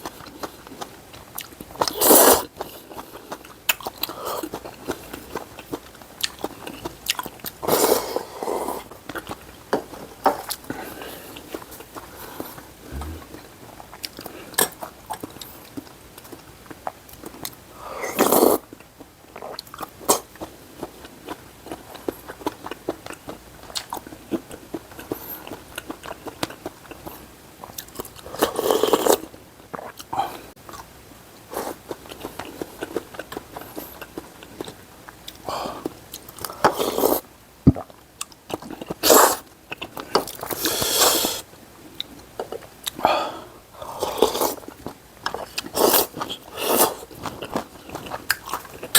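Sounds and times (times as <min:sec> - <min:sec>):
chewing and mouth clicks: 0:00.0 - 0:08.2, 0:08.8 - 0:13.3, 0:13.9 - 0:30.9, 0:37.8 - 0:40.7, 0:44.1 - 0:48.9.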